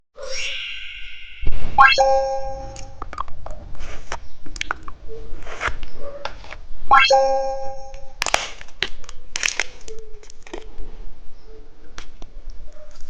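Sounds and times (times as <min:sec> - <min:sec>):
bright ringing chime: 0:00.2 - 0:03.0, 0:06.9 - 0:08.1.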